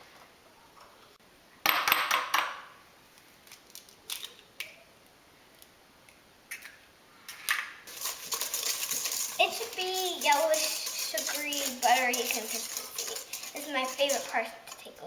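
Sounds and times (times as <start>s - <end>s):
dishes and utensils clattering: 7.9s - 15.0s.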